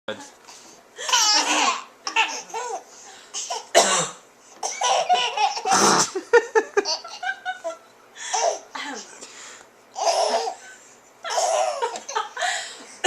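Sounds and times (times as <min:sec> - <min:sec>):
baby laughing: 0:01.0 - 0:02.8, 0:04.6 - 0:08.7, 0:10.0 - 0:10.6, 0:11.2 - 0:12.4
woman coughing: 0:03.6 - 0:05.0, 0:05.7 - 0:06.2, 0:08.8 - 0:09.2, 0:11.3 - 0:11.9.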